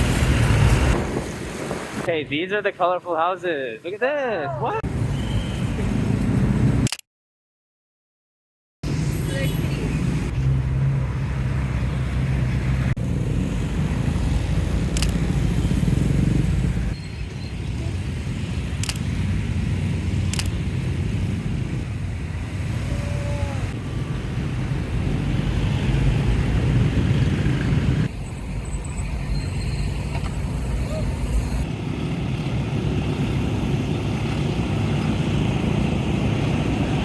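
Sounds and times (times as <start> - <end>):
cars and motorbikes passing: 0.0 - 2.1, 8.8 - 37.0
sharp clicks: 6.8 - 7.1, 18.8 - 19.1, 20.3 - 20.6.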